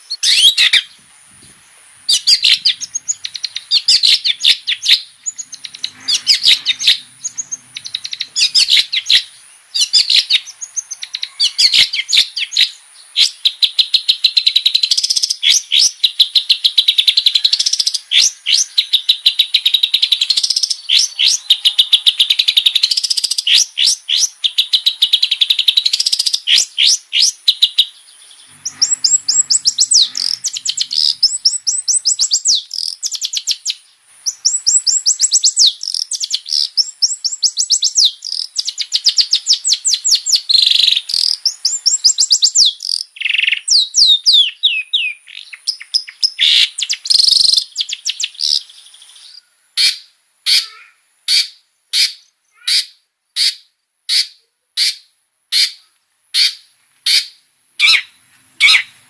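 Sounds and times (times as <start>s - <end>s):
bird chattering trills: 2.1s - 12.7s, 16.8s - 33.7s.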